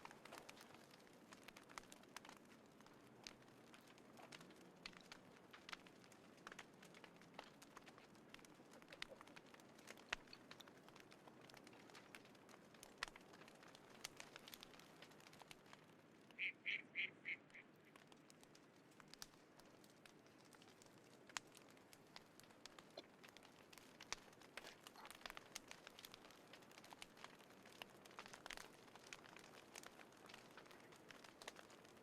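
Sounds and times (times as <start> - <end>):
wood fire crackling: 0.0 - 32.0
bird calling: 16.4 - 17.7.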